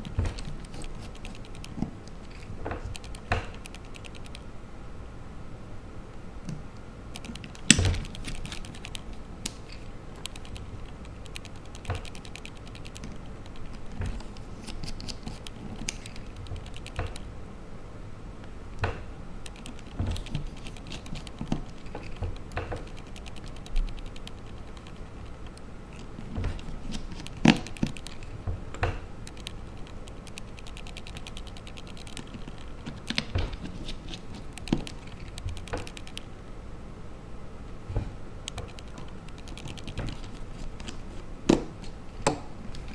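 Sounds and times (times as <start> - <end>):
screwdriver clicking on tiny screws: 0.0 - 4.4, 7.1 - 9.1, 9.7 - 17.3, 19.4 - 28.3, 29.2 - 33.3, 34.1 - 36.3, 38.5 - 40.9.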